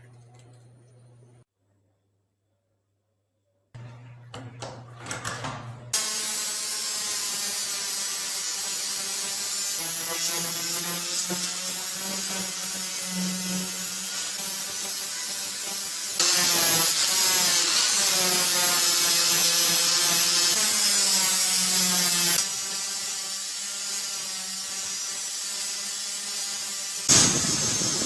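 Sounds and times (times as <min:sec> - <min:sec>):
electric power tool running: 0:05.9 - 0:28.0.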